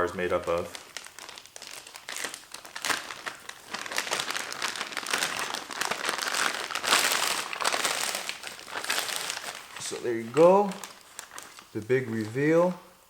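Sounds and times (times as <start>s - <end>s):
packing material crinkling: 0.0s - 12.8s.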